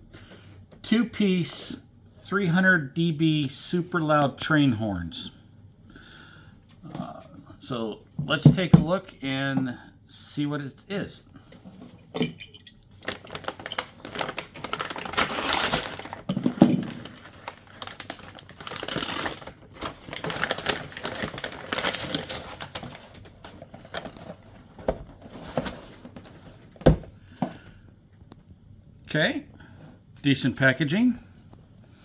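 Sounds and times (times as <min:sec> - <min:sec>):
packaging crinkling and rustling: 0:13.0 - 0:27.1.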